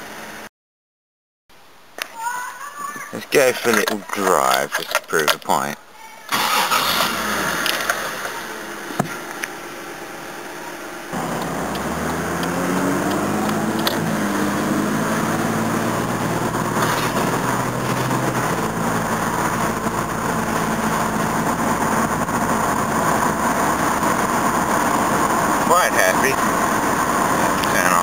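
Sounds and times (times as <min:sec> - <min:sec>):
car engine accelerating: 0:06.4 - 0:28.0.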